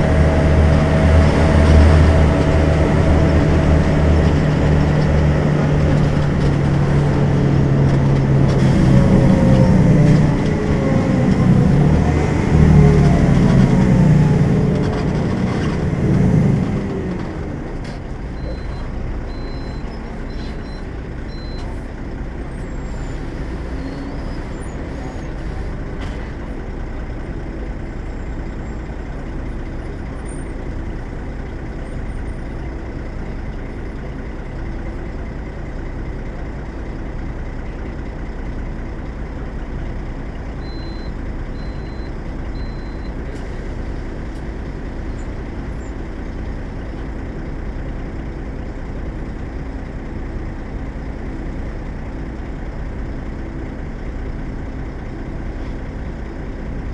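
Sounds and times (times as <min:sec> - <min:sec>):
bus diesel engine droning: 0:00.0 - 0:56.9
short high beeps: 0:40.6 - 0:43.1.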